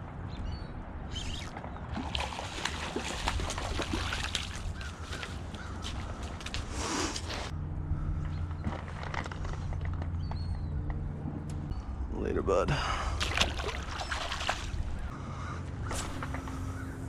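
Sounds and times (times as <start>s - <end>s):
water splashing at edge: 1.9s - 6.0s, 13.2s - 15.1s.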